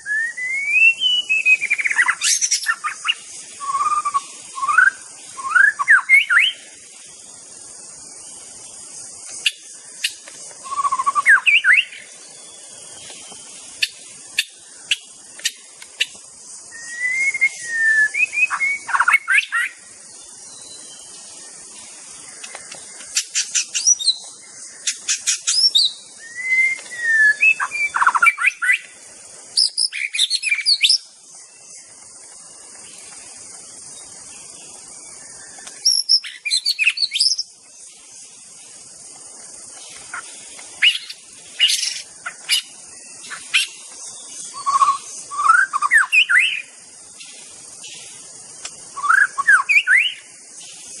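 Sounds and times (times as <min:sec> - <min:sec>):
bird singing whistled phrases: 0:00.0 - 0:06.6, 0:10.6 - 0:12.1, 0:16.7 - 0:19.8, 0:23.6 - 0:24.3, 0:25.1 - 0:28.9, 0:29.6 - 0:31.1, 0:35.6 - 0:37.5, 0:44.4 - 0:46.7, 0:48.9 - 0:50.3
steady high hiss: 0:00.0 - 0:51.0.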